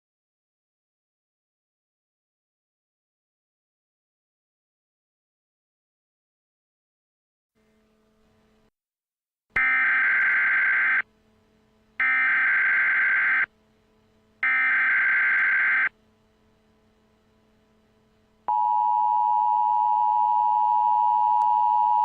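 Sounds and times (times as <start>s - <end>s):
faint low hum: 9.6s - 22.0s
screechy digital data tone bursts: 12.0s - 13.5s, 14.4s - 15.9s.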